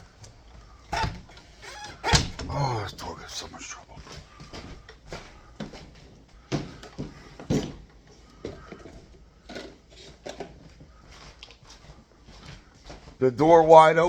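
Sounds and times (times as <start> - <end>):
knocks and clunks: 0.9 - 2.5.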